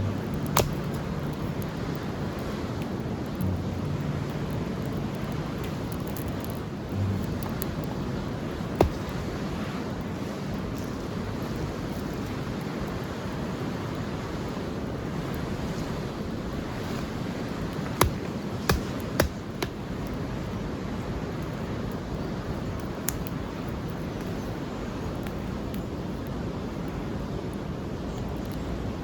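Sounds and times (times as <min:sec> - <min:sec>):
steady rushing noise: 0:00.0 - 0:19.7.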